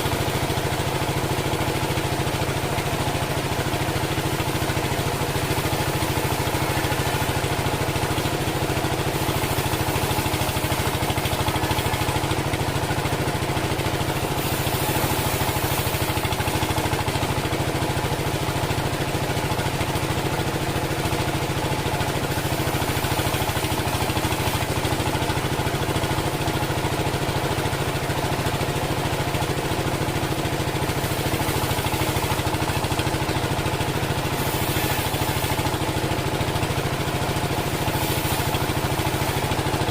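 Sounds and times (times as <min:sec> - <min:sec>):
sawmill engine running: 0:00.0 - 0:39.9.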